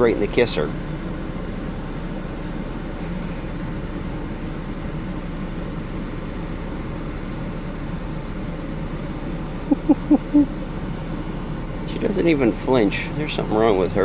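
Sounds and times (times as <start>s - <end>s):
vehicle cab mechanical hum: 0.0s - 14.0s.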